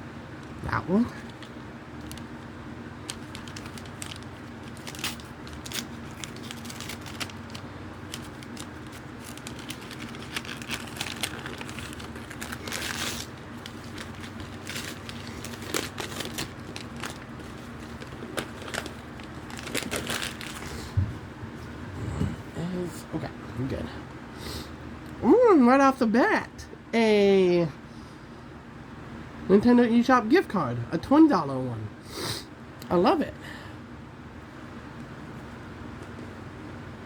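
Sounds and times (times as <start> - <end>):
steady low hum: 0.0 - 37.0
packaging crinkling: 1.2 - 21.0
packaging tearing: 3.0 - 20.8.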